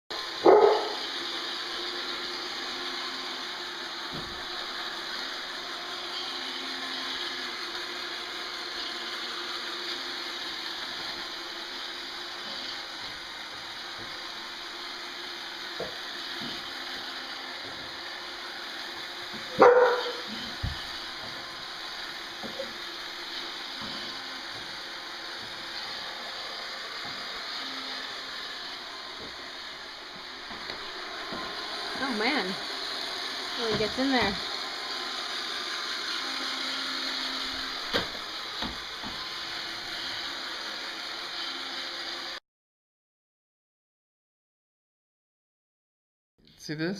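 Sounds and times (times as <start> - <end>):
robot vacuum whirring: 0.2 - 42.4
dog barking: 0.4 - 1.0, 19.6 - 20.2.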